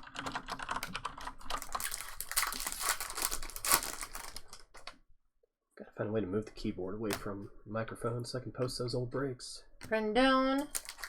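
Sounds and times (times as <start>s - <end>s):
computer keyboard typing: 0.0s - 2.6s
crinkling: 0.0s - 5.0s, 10.6s - 11.0s.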